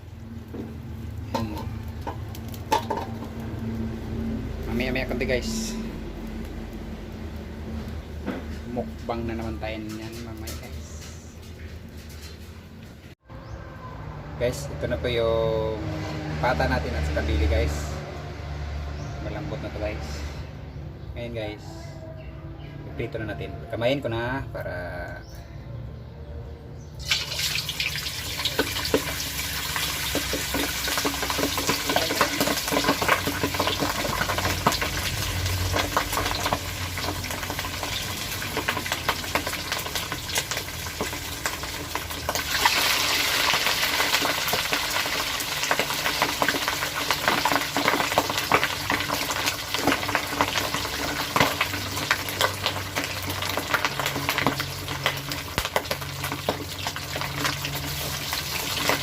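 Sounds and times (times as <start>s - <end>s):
meat deep-frying in hot oil: 0.0s - 9.7s, 27.0s - 59.0s.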